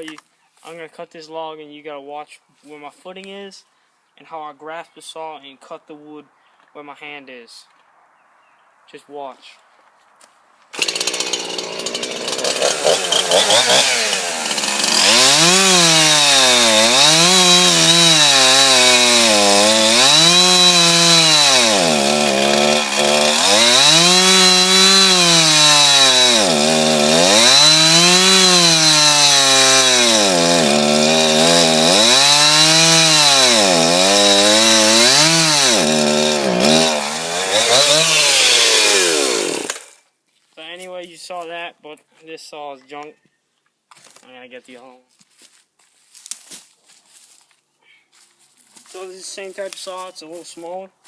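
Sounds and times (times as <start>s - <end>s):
chainsaw cutting a log: 10.8s - 40.0s.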